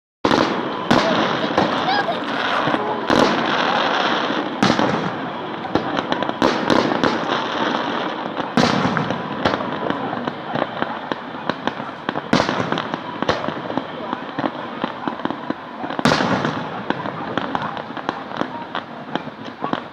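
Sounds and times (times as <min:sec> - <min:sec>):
continuous noisy background: 0:00.2 - 0:19.9
firework shells bursting: 0:00.3 - 0:09.9.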